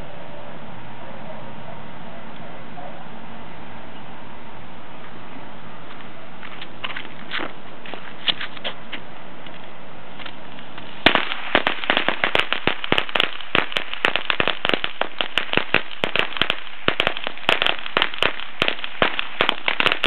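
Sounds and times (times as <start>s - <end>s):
firecrackers banging: 6.4s - 20.0s.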